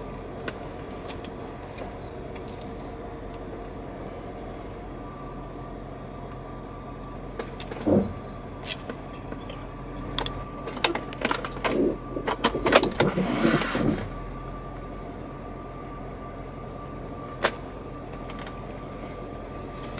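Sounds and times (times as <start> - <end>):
car engine hum: 0.0 - 19.9
thump: 7.8 - 8.2.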